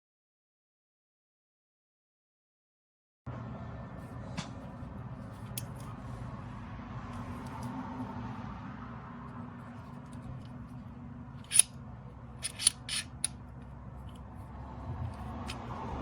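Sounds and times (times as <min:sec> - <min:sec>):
tripod head clicking: 0:11.4 - 0:11.7, 0:12.4 - 0:13.4.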